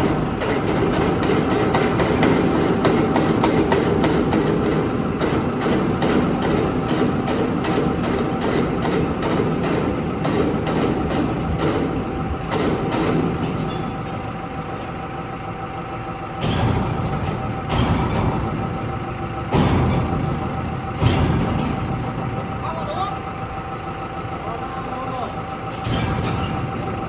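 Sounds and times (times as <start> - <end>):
rapid metallic clicks: 0.0 - 14.3
heavy engine running: 0.0 - 27.0.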